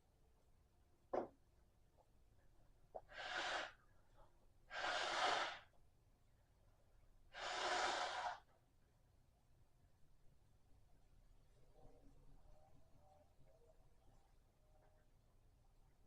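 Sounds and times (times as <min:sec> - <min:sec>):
person breathing noisily: 0:03.0 - 0:03.8, 0:04.7 - 0:05.7, 0:07.3 - 0:08.4.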